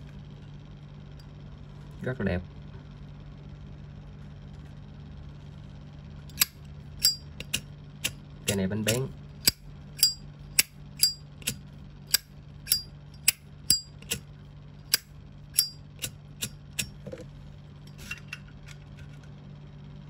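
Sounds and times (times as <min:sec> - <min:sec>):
steady low hum: 0:00.0 - 0:20.0
lighter lid clinking open and shut: 0:06.3 - 0:14.2, 0:14.9 - 0:17.0.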